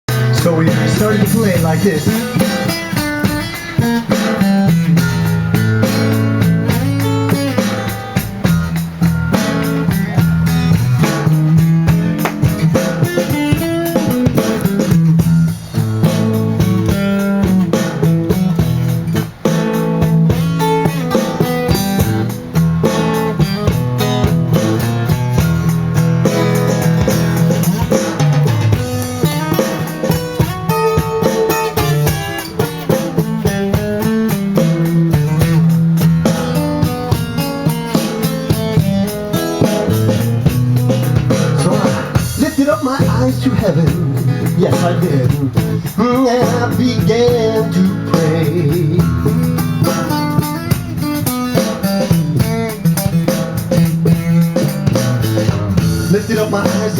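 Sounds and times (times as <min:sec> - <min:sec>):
drum kit: 0:00.0 - 0:56.9
guitar: 0:00.0 - 0:56.9
live blues band: 0:00.1 - 0:56.9.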